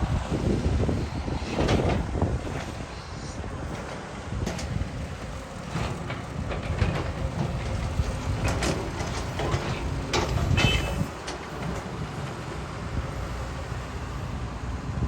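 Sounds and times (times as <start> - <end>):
excavator diesel engine rumbling: 0.0 - 15.0
excavator bucket knocks and clanks: 1.4 - 2.8, 3.7 - 12.4.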